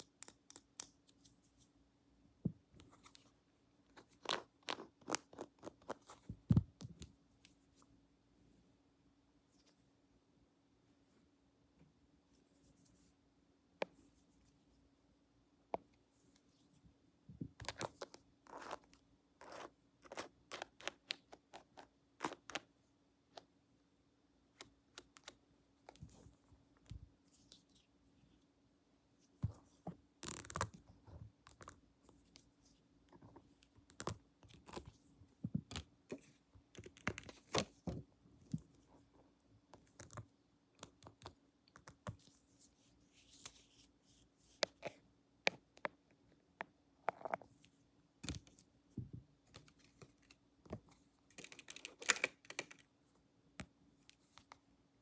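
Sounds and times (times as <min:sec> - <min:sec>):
crisp clicks taps and scratches: 0:00.0 - 0:01.6, 0:03.9 - 0:07.6, 0:17.5 - 0:22.7, 0:29.4 - 0:39.1, 0:39.7 - 0:42.6, 0:44.5 - 0:52.9
faint steady hum: 0:00.0 - 0:55.0.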